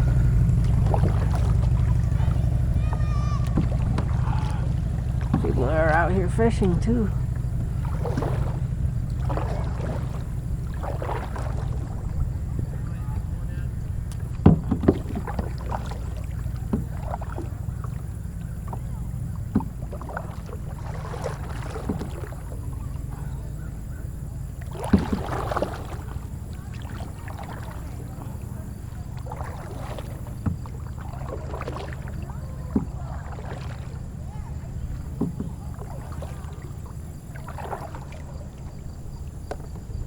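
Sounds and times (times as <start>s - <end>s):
low rumble: 0.0s - 24.6s
kayak paddle splashing in water: 0.0s - 40.0s.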